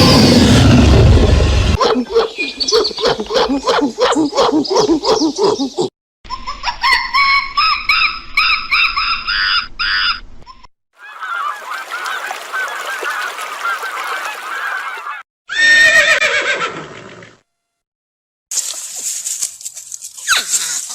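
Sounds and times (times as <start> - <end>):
waterfowl honking: 11.0 - 15.2.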